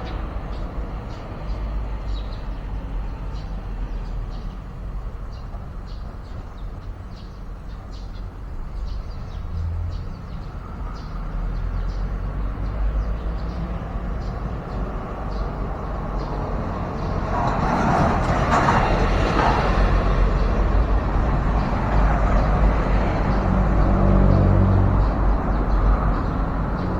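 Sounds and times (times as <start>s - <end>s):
small birds chirping: 0.0s - 17.3s.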